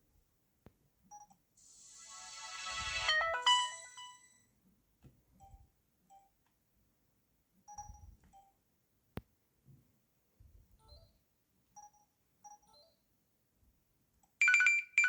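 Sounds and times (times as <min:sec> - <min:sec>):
phone ringtone chimes: 0:02.1 - 0:04.4, 0:14.4 - 0:15.0
soft phone beeps with clicks: 0:07.7 - 0:08.6, 0:11.8 - 0:13.0, 0:14.4 - 0:15.0.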